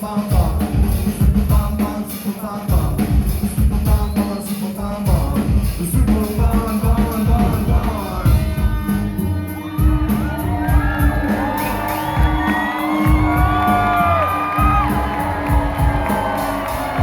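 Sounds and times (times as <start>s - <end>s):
rock band playing: 0.0s - 17.0s
audience whooping and cheering: 9.1s - 17.0s.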